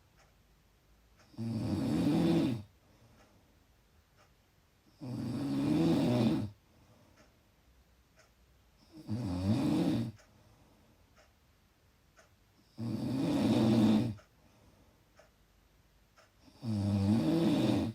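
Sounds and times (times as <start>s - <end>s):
person snoring: 1.3s - 2.7s, 4.9s - 6.6s, 8.8s - 10.2s, 12.7s - 14.2s, 16.4s - 17.9s.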